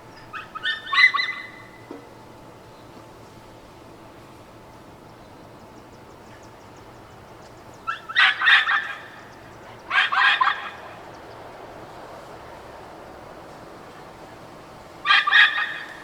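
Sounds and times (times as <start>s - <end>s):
street background noise: 0.0s - 16.0s
dog barking: 9.9s - 10.8s, 15.0s - 15.9s.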